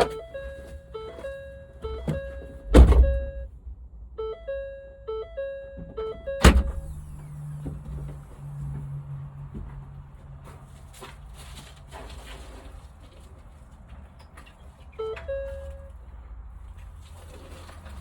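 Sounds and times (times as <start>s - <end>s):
simple electronic melody: 0.0s - 3.5s, 4.2s - 6.4s
low steady hum: 0.0s - 8.8s
loud heavy thump: 2.0s - 3.5s.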